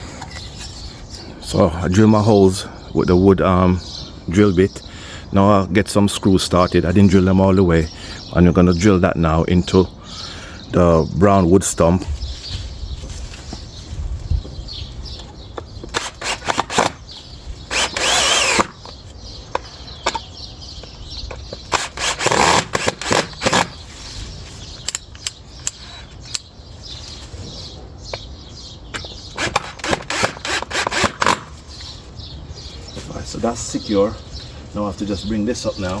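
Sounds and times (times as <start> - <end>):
power drill driving screws into wood: 15.8 - 17.0, 17.7 - 18.9, 21.7 - 23.8, 29.4 - 31.6.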